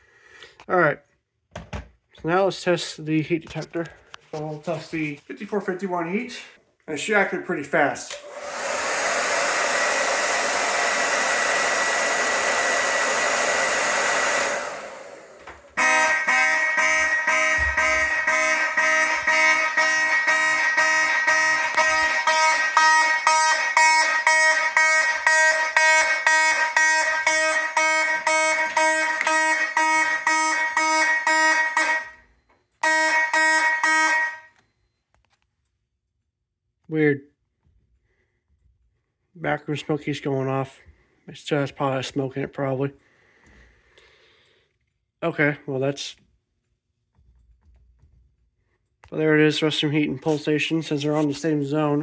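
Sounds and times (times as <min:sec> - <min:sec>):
hot-air blower running: 0:08.1 - 0:17.3, 0:18.0 - 0:32.0
fire alarm horns pulsing: 0:12.3 - 0:34.8.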